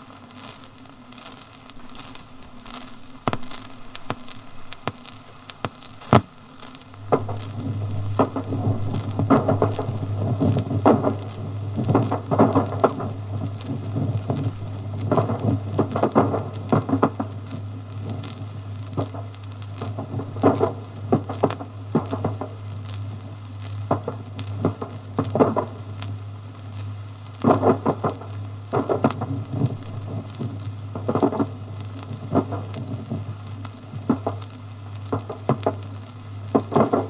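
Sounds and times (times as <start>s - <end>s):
low hum of old disc recording: 0.0s - 37.0s
distant gunfire: 3.2s - 17.0s.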